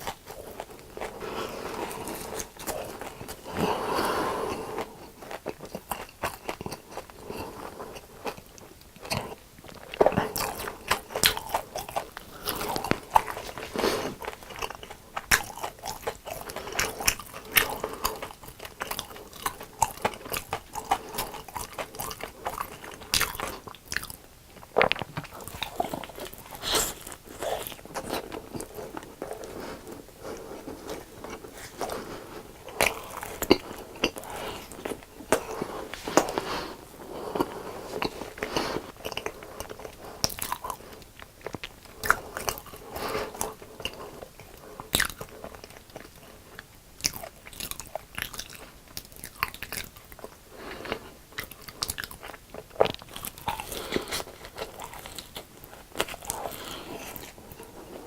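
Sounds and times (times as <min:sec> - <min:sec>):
crunching fried food: 0:00.0 - 0:57.8.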